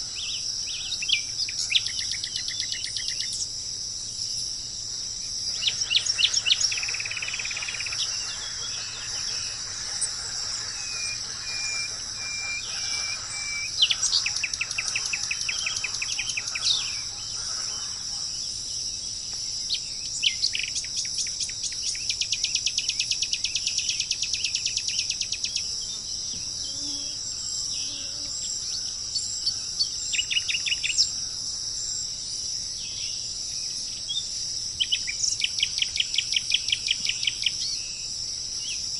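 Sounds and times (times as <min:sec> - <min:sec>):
insects chirring: 0:00.0 - 0:38.9
bird rapid repeated calls: 0:05.5 - 0:18.3.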